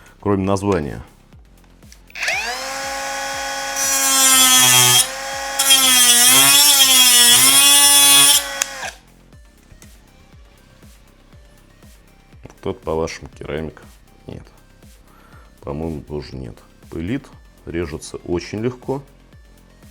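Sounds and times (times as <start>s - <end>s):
angle grinder whine: 2.2s - 9.0s
grinding hiss: 2.3s - 8.9s.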